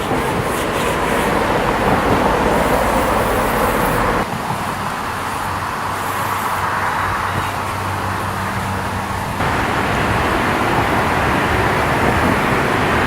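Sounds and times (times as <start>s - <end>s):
outdoor vehicle rumble: 8.5s - 13.0s.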